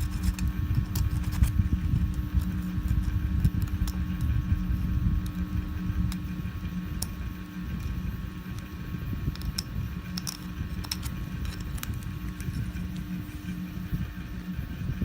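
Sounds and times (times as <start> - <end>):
low electric hum: 0.0 - 15.0
hand tools clicking on plastic: 9.3 - 13.1.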